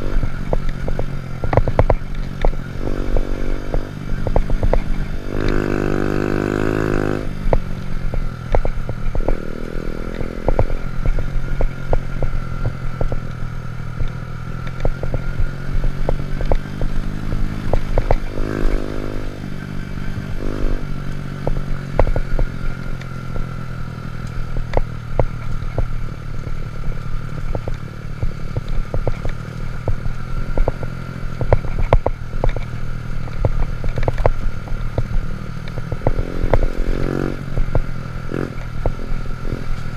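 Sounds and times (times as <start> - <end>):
motorcycle engine revving: 0.0 - 39.9
sharp clatter and knocks: 24.4 - 39.9.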